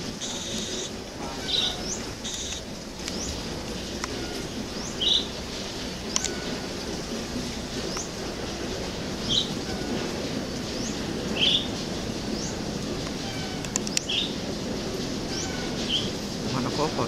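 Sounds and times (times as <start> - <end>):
buzzy bird notes: 0.0 - 3.5
high rising bird chirp: 0.2 - 3.4, 4.3 - 5.4
sharp clicks: 2.2 - 3.3, 6.1 - 6.4, 13.0 - 14.1.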